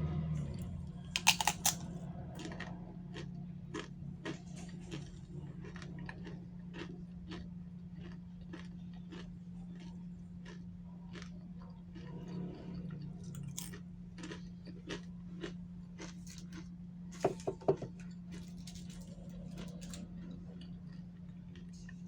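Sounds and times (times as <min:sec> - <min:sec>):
steady low hum: 0:00.0 - 0:22.0
chewing crunchy food: 0:00.1 - 0:22.0.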